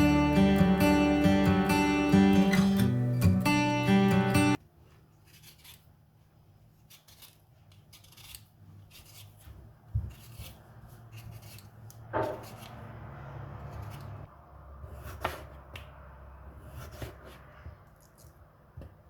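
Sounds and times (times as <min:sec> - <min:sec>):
acoustic guitar music: 0:00.0 - 0:04.6.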